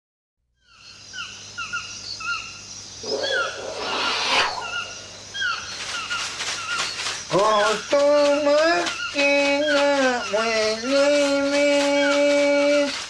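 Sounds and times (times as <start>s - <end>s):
noisy rushing swell: 3.0s - 5.8s
short repeated animal calls: 3.0s - 6.8s.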